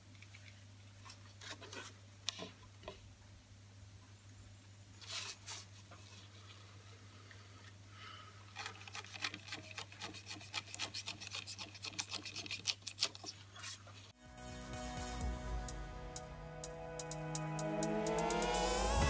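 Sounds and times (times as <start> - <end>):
knife cutting through rope: 8.6 - 13.8.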